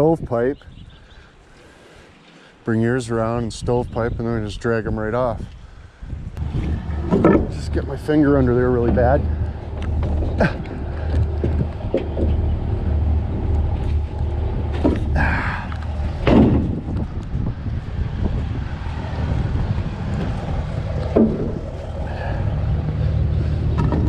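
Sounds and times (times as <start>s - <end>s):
short knocks and scrapes: 6.4s - 17.1s, 21.0s - 22.0s, 23.6s - 24.0s
vehicle engine idling: 6.4s - 24.0s.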